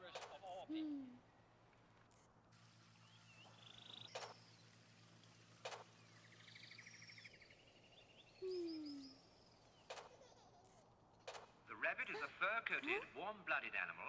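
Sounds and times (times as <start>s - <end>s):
low steady hum: 0.0s - 14.0s
birds chirping and trilling: 3.0s - 4.8s, 5.8s - 11.3s.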